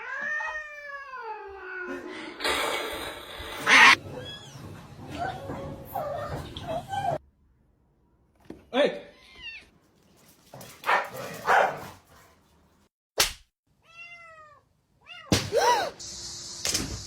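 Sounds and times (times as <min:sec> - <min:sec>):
cat meowing: 0:13.8 - 0:15.3.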